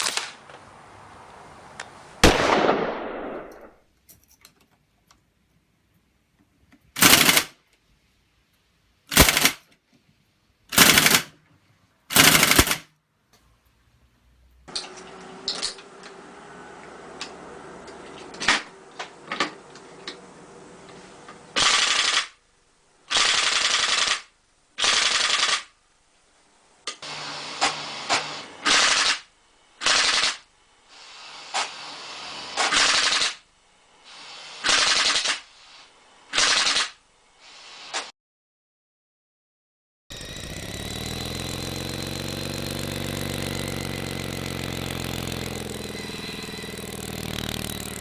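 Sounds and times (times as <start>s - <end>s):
airsoft rifle firing: 2.2s - 3.8s.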